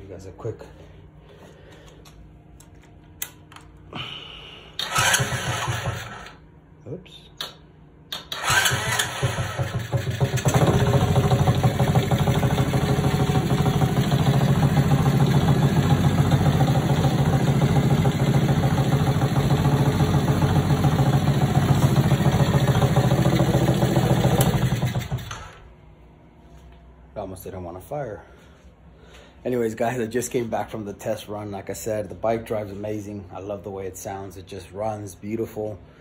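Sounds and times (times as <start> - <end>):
small engine starting and running: 4.8 - 6.4, 8.1 - 25.7.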